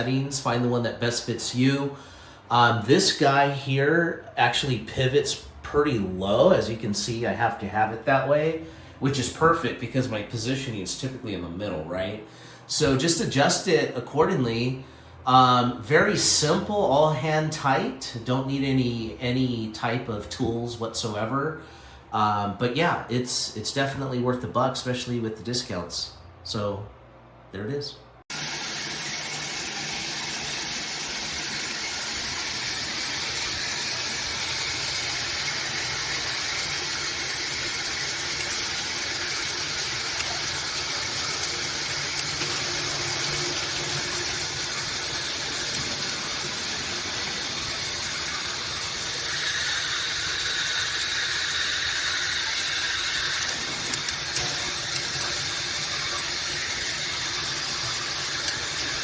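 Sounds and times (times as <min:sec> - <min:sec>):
shower head spraying water: 0:28.3 - 0:59.0.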